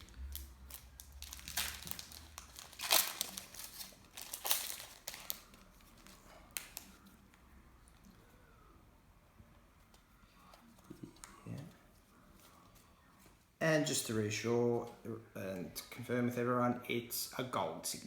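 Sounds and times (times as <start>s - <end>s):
wrappers crinkling and rustling: 0.0s - 8.1s.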